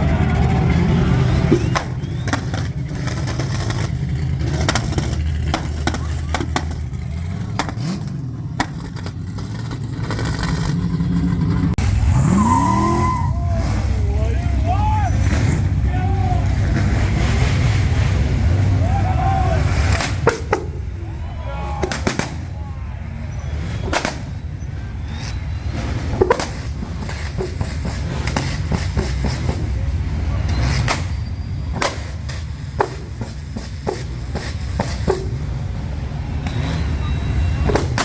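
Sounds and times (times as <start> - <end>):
car engine revving: 0.0 - 38.0
exhaust pops and cracks: 1.3 - 11.9, 19.7 - 21.0, 21.8 - 22.6, 23.8 - 24.4, 26.1 - 35.6, 37.6 - 38.0.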